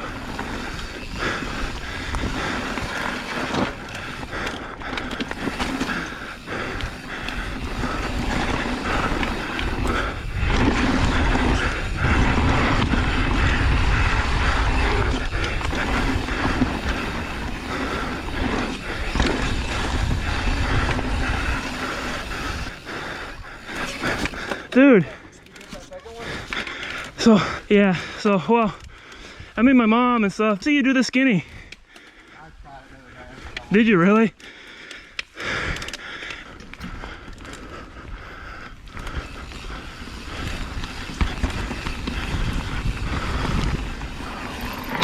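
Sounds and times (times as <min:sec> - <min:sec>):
wind rushing over microphone: 0:06.7 - 0:23.6, 0:39.2 - 0:45.0.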